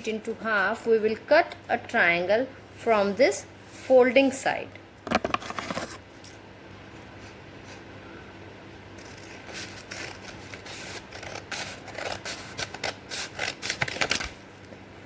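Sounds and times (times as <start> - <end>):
scissors snipping paper: 9.0 - 14.4.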